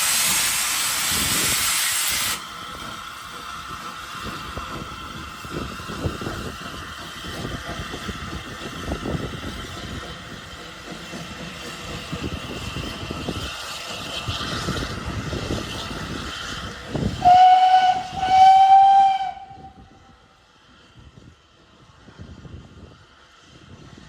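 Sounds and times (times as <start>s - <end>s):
steam locomotive hissing: 0.0s - 24.0s
steam whistle blasts: 17.2s - 20.2s.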